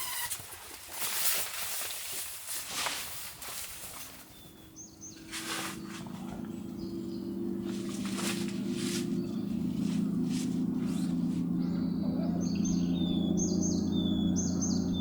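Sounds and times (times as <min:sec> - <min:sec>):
rustling: 0:00.0 - 0:04.3, 0:05.2 - 0:06.3, 0:07.6 - 0:11.4
small bird singing: 0:04.2 - 0:15.0
steady low hum: 0:04.4 - 0:15.0.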